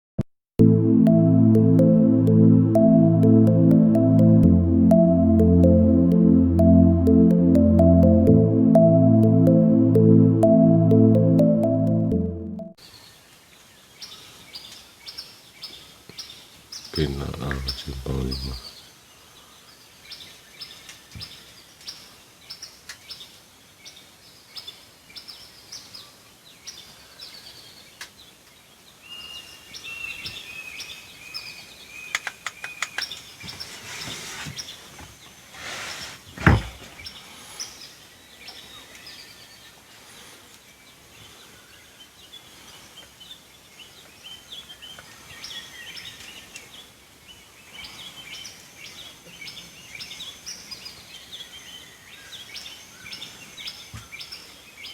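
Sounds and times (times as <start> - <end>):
loud thump: 36.4 - 36.9.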